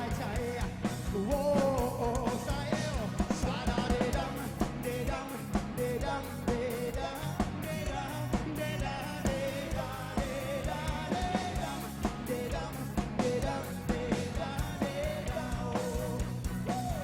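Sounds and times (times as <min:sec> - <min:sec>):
drums on a steady beat: 0:00.0 - 0:17.0.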